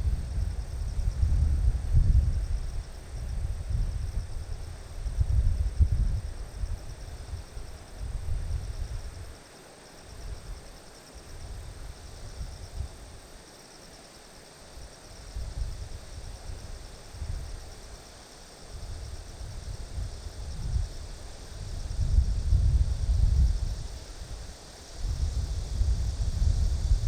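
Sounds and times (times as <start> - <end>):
wind buffeting microphone: 0.0 - 9.3, 18.8 - 27.0
insects chirring: 0.0 - 27.0.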